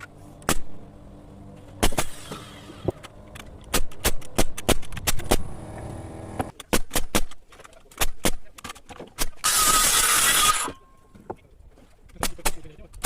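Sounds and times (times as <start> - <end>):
steady low hum: 0.0 - 6.5.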